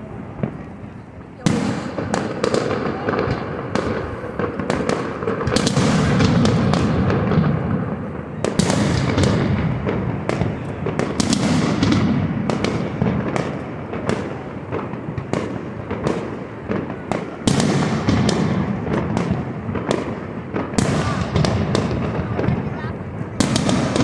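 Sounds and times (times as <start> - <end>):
fireworks bangs and cracks: 0.0 - 24.0.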